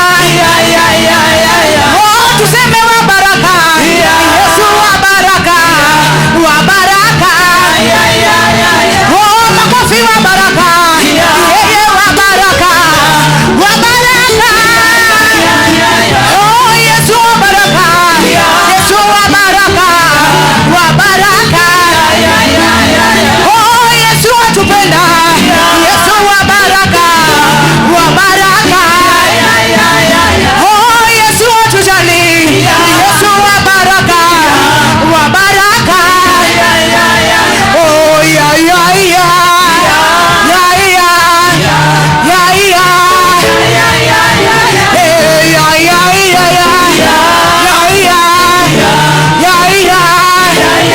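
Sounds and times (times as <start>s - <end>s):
steady bass line: 0.0s - 50.9s
worship song with voices: 0.0s - 50.9s.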